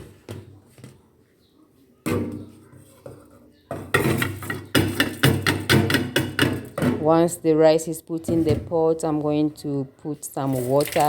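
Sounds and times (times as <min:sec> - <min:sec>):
metal cooking pot clattering: 0:02.1 - 0:07.2
rice tapping into pot: 0:03.9 - 0:06.8.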